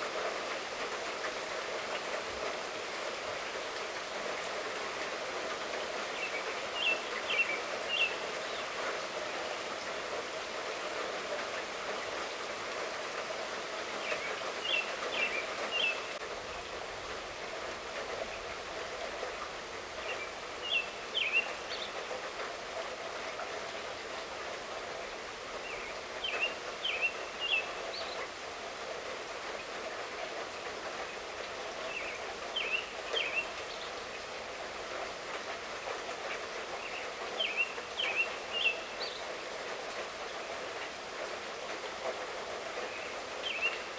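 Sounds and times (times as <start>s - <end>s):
light rain hissing: 0.0s - 43.9s
bird singing: 6.2s - 8.7s, 14.1s - 16.1s, 20.2s - 21.9s, 31.9s - 33.9s, 36.8s - 39.2s, 42.9s - 43.9s.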